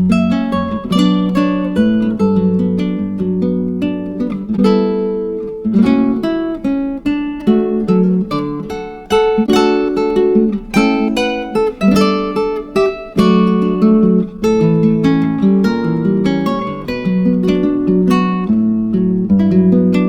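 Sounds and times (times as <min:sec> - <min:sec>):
acoustic guitar strummed chords: 0:00.0 - 0:20.0.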